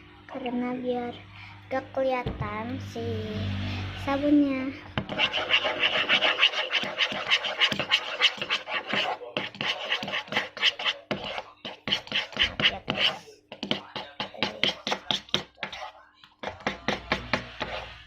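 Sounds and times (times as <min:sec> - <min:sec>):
slime stirring scraping strokes: 0:05.0 - 0:18.0.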